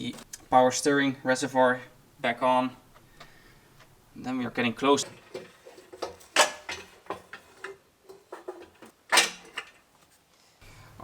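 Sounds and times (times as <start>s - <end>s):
tools and engine parts clinking: 5.0s - 9.9s.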